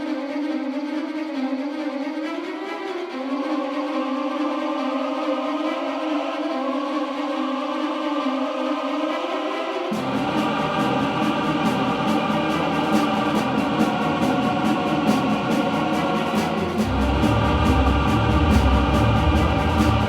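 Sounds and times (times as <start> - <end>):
music with steady beat: 9.9 - 20.0
bass: 16.8 - 20.0.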